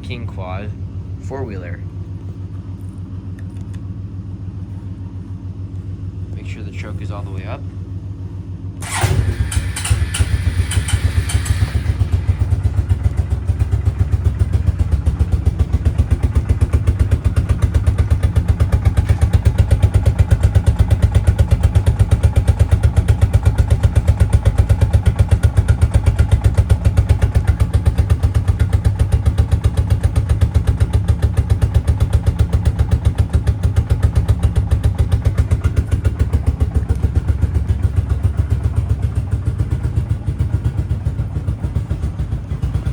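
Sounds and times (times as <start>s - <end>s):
quad bike engine idling: 0.0s - 42.9s
engine starting clatter: 8.8s - 12.2s.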